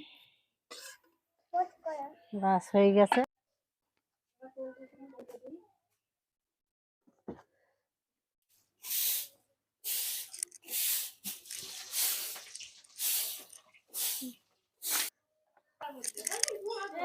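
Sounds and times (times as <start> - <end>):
oil sizzling in a pan: 9.9 - 15.1.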